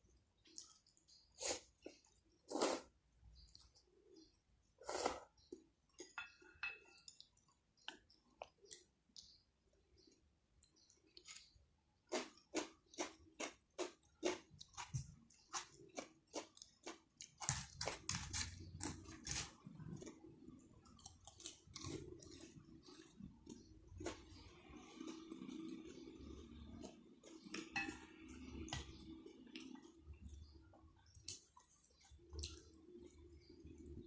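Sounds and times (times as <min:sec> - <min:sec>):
person chewing food: 0:00.4 - 0:04.3, 0:04.9 - 0:34.0.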